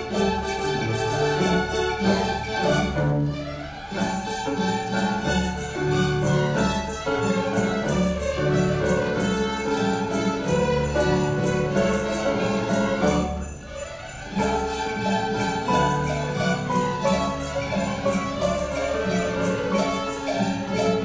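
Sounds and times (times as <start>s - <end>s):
sleigh bells shaken: 0.0s - 3.1s, 4.0s - 21.0s
orchestra playing light music: 0.0s - 21.0s.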